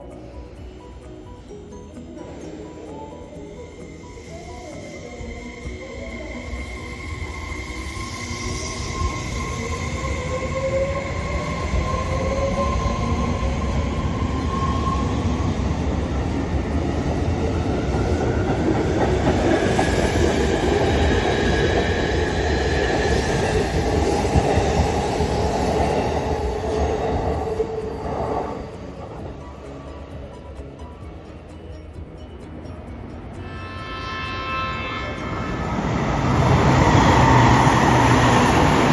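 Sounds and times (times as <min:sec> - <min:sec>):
train motor whine: 0:03.5 - 0:25.4
train wheels rumbling on rails: 0:04.1 - 0:38.9.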